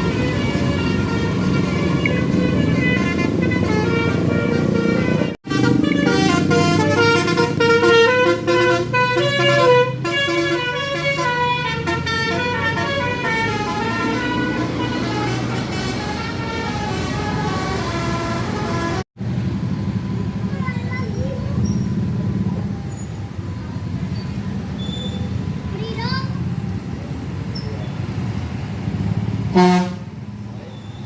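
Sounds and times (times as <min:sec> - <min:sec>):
multi-tone air horn tune: 0:00.0 - 0:19.0, 0:29.5 - 0:30.1
bus engine running: 0:00.0 - 0:31.0.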